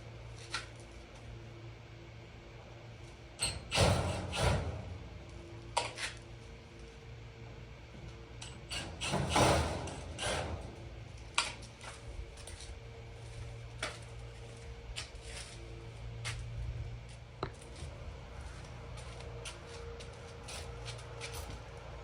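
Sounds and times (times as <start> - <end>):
low steady hum: 9.8 - 22.0.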